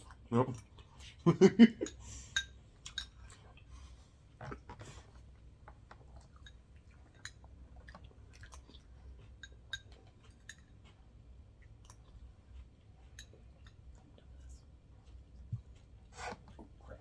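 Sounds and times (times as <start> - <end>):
wet mouth clicks chewing: 4.4 - 16.5.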